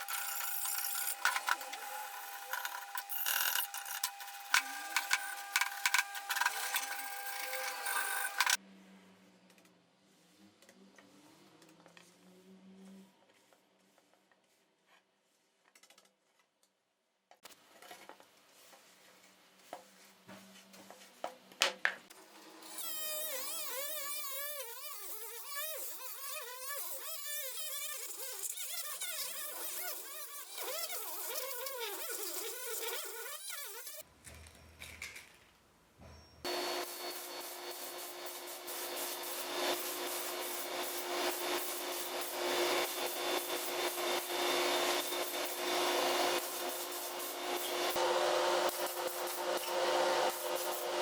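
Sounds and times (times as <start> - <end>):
power tool whining: 0.0 - 8.6, 36.5 - 51.0.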